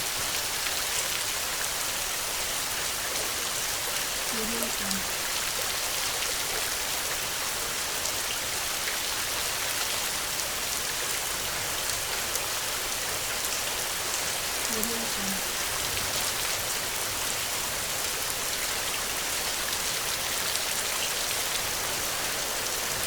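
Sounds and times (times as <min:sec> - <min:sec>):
heavy rainfall: 0:00.0 - 0:23.0
person speaking watermark: 0:04.4 - 0:05.0, 0:14.7 - 0:15.4.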